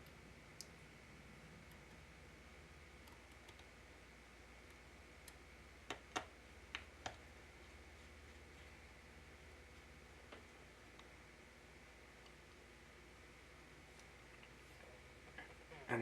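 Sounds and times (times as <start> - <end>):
faint steady hum: 0.0 - 16.0.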